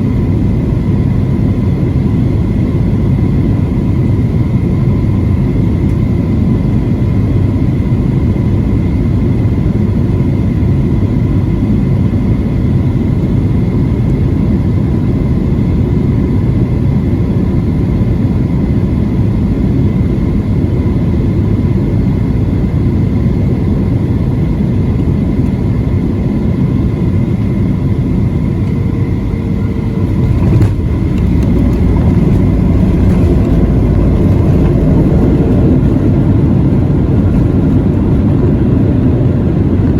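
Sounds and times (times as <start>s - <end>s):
jet engine roar in cabin: 0.0s - 39.9s
faint high whine: 26.5s - 39.1s.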